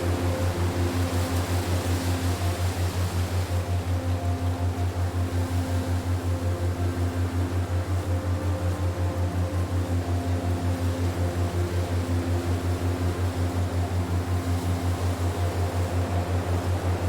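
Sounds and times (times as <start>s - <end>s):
pulsing low hum: 0.0s - 17.0s.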